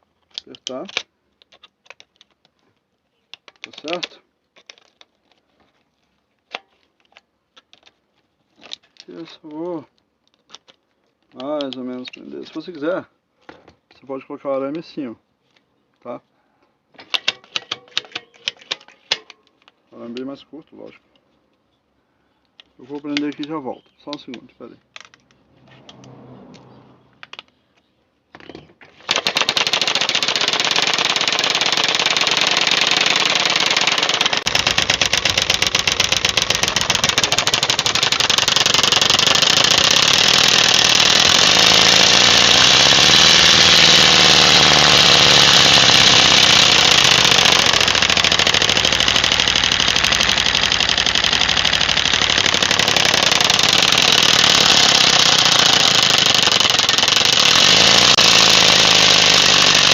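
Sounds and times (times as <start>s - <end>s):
plastic bottle clattering on spokes: 16.9s - 19.8s.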